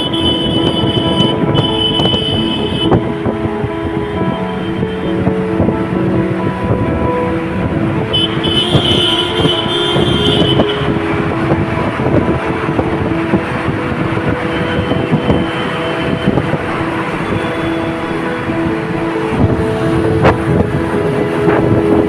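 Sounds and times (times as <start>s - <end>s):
high-pitched horn blast: 0.0s - 3.0s, 8.1s - 11.0s
vehicle horns sounding: 0.0s - 3.1s, 8.1s - 11.1s
busy street traffic: 0.0s - 22.0s.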